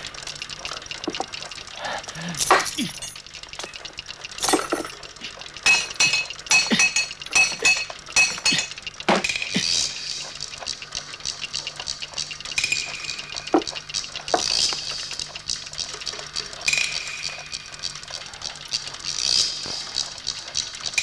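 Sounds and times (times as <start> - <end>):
glass clinking and breaking: 2.4 - 3.8, 4.4 - 5.0, 5.7 - 8.8.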